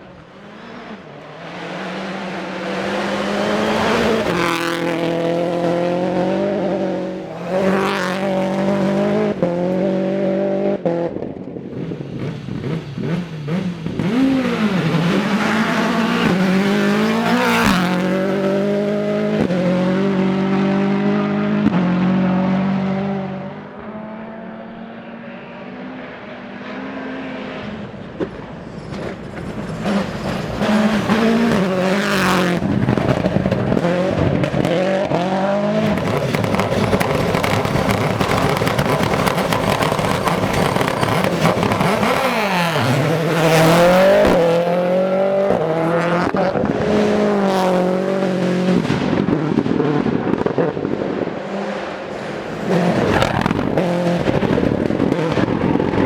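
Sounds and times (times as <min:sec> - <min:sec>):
rally car engine revving: 0:00.0 - 0:56.0
tyre noise: 0:35.8 - 0:45.6, 0:50.4 - 0:56.0.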